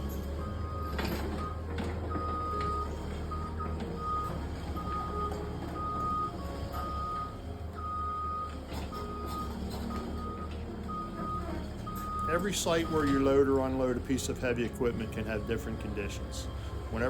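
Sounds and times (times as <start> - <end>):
diesel engine rumbling: 0.0 - 17.0
backup alarm beeping: 0.4 - 13.2.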